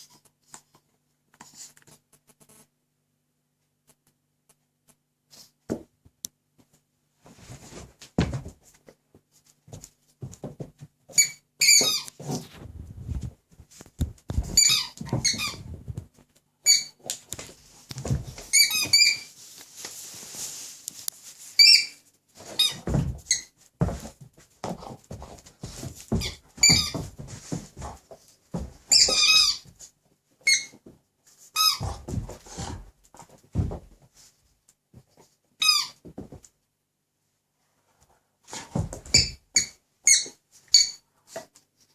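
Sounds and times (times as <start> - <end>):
squeaky toy squeaking: 11.2 - 12.1, 14.6 - 15.6, 16.6 - 17.0, 18.5 - 19.3, 21.6 - 22.0, 28.9 - 29.7, 30.4 - 30.8, 35.6 - 36.0, 39.1 - 41.0.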